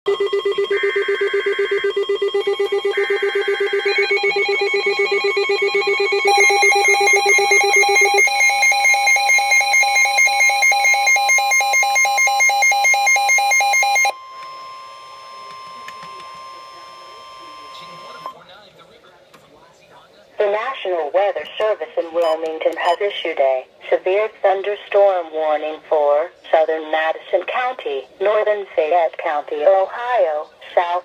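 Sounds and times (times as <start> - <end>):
pulsing electronic alert tones: 0.1 - 18.3.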